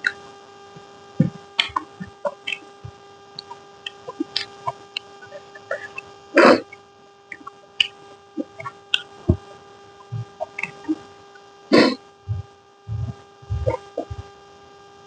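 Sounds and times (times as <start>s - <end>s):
steady electrical hum: 0.0s - 15.0s
mouth clicks and lip smacks: 1.2s - 11.0s, 11.8s - 14.3s
soft chewing thumps: 7.4s - 11.0s, 12.3s - 14.2s.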